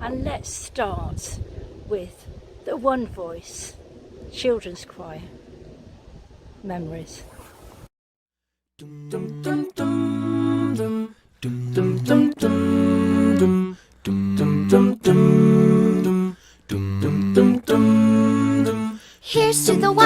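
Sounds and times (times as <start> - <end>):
children's choir singing: 9.1 - 11.0, 11.8 - 13.6, 17.3 - 20.0.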